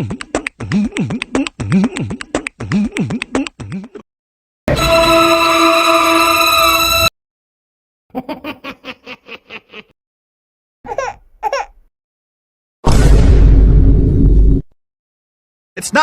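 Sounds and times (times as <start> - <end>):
person giggling: 8.1 - 9.9.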